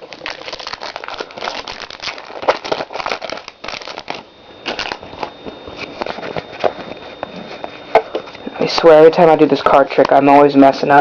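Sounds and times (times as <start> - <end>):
foil wrapper crinkling: 0.0 - 8.4.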